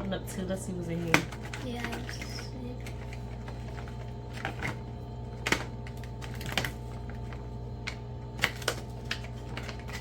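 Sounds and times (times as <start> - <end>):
plastic packaging clicks and taps: 5.4 - 10.0.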